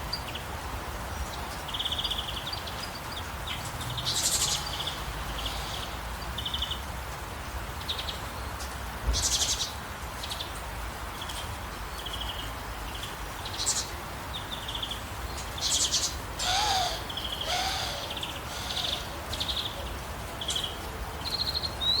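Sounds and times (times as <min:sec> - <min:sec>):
faint background noise: 0:00.0 - 0:22.0
birds chirping and trilling: 0:01.2 - 0:06.9, 0:09.1 - 0:22.0
long bird calls: 0:12.1 - 0:22.0.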